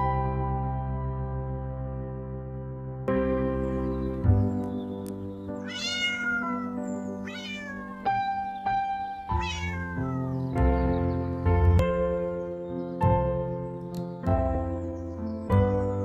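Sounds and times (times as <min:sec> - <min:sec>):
gentle background music: 0:00.0 - 0:16.0
cat meowing: 0:05.6 - 0:10.5.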